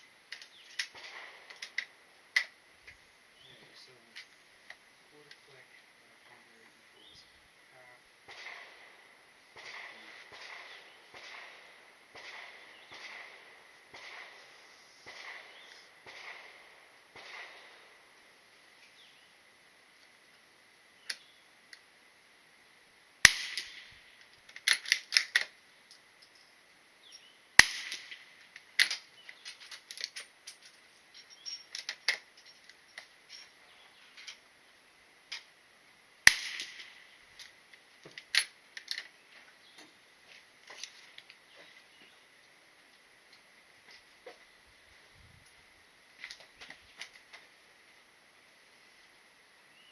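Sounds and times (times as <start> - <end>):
quieter gunshot cracks: 0.8 - 1.7, 8.3 - 18.0, 23.2 - 24.0, 27.6 - 28.3, 36.3 - 37.1
loud gunshots: 0.9 - 1.5, 8.2 - 18.0, 23.2 - 24.0, 27.6 - 28.2, 36.3 - 37.0.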